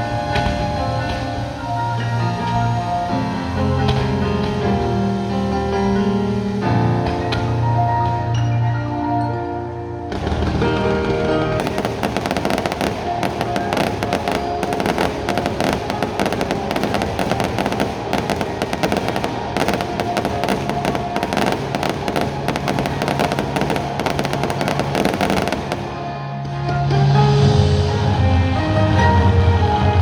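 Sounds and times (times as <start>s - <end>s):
fireworks crackling: 1.1s - 6.6s, 10.2s - 26.1s.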